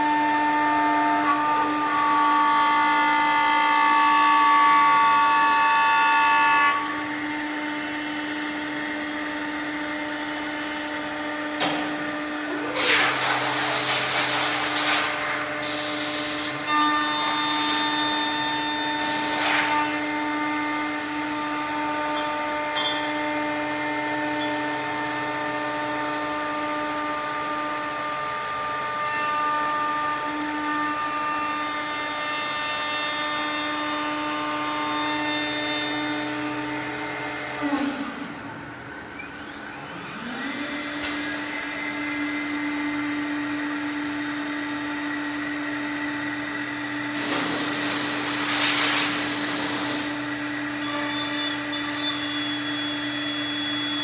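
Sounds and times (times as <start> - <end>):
machine spindle whining: 15.4 - 26.6, 37.4 - 43.2, 46.2 - 54.0
tool rasping into wood: 48.6 - 54.0.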